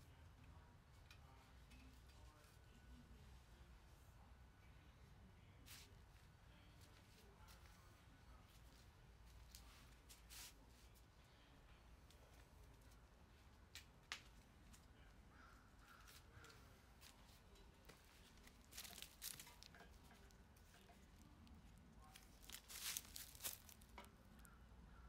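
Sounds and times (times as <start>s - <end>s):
vinyl decal crinkling and peeling: 17.9s - 24.0s.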